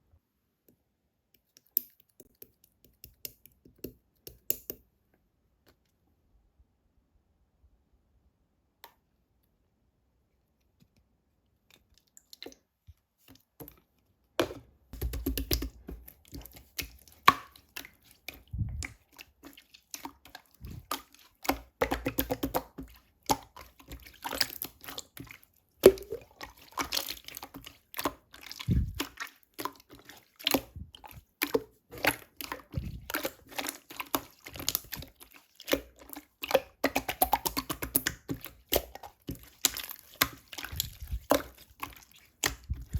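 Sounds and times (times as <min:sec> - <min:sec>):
slime squelching and popping: 0:14.4 - 0:42.9.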